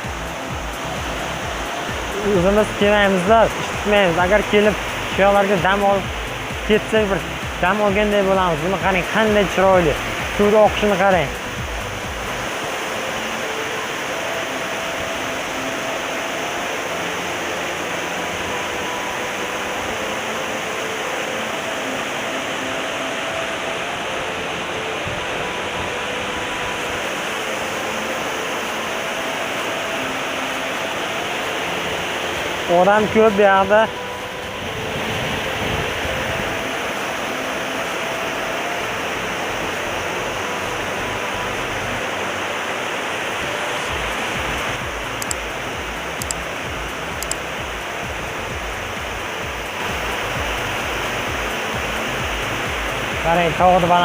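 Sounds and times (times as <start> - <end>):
waterfall and stream rushing: 0.0 - 54.0.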